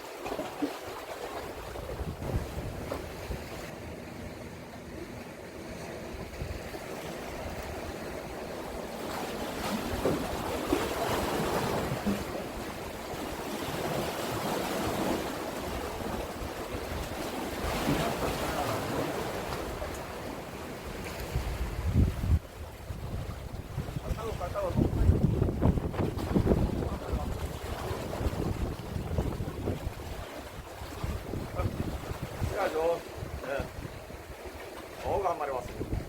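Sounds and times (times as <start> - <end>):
sea waves washing against seawall: 0.0 - 36.0
wind buffeting microphone: 1.6 - 3.7, 6.0 - 8.8, 20.8 - 36.0.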